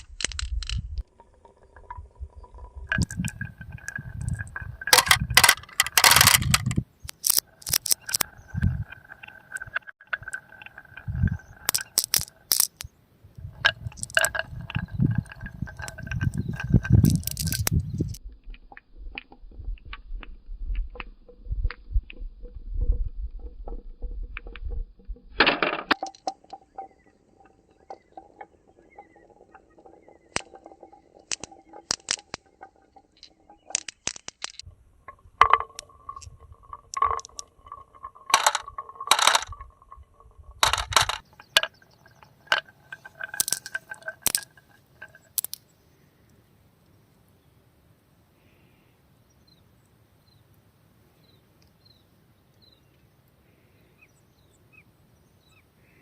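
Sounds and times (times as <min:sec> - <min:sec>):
marbles clacking on wood: 0:00.0 - 0:18.2, 0:25.4 - 0:45.6
marbles rolling on wooden tracks: 0:00.0 - 0:18.2, 0:20.8 - 0:45.7.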